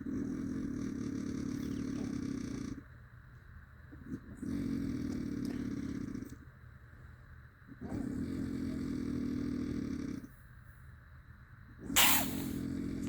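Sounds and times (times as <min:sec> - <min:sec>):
heavy rattling snoring: 0:00.0 - 0:02.8, 0:04.1 - 0:06.4, 0:07.8 - 0:10.3, 0:12.0 - 0:13.0.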